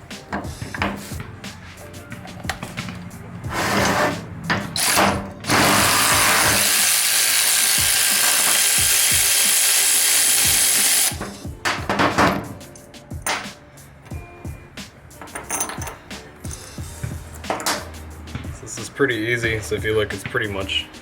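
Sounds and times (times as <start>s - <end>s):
cordless ratchet running: 4.8s - 11.2s.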